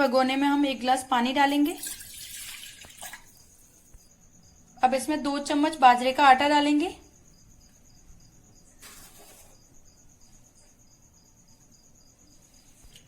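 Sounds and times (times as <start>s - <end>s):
faint cricket chirping: 0.0s - 13.0s
soft rustle: 8.8s - 9.6s.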